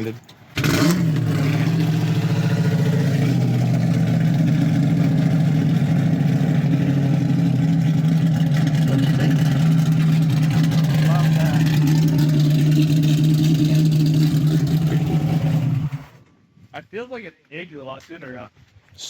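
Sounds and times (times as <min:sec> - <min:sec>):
car engine idling: 0:00.5 - 0:16.2.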